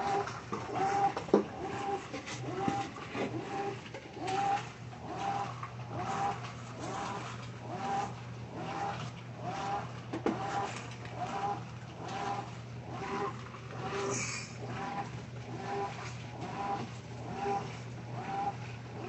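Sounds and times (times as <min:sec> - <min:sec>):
washing machine motor whining: 0:00.0 - 0:19.0.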